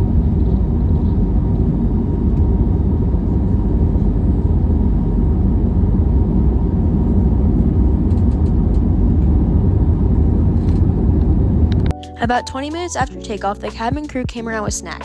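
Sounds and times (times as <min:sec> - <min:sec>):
jet engine cabin rumble: 0:00.0 - 0:11.9.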